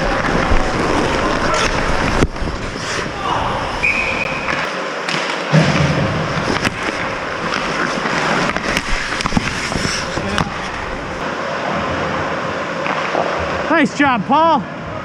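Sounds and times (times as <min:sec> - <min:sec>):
hockey sticks and puck clacking: 0:00.0 - 0:03.1, 0:03.8 - 0:11.0, 0:12.8 - 0:13.4
skates scraping on ice: 0:00.0 - 0:11.2.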